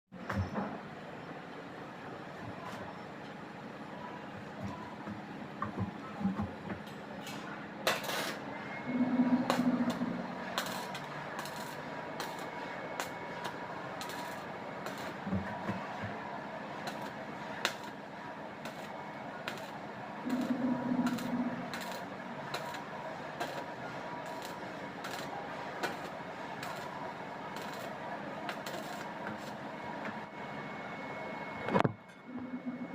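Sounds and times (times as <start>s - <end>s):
welding arc crackling sizzle: 7.8s - 30.4s
sharp welding pops: 7.9s - 8.4s, 10.6s - 15.2s, 16.8s - 18.0s, 19.5s - 22.8s, 27.6s - 27.9s, 28.5s - 29.5s
low drone: 8.8s - 11.0s, 20.2s - 22.0s.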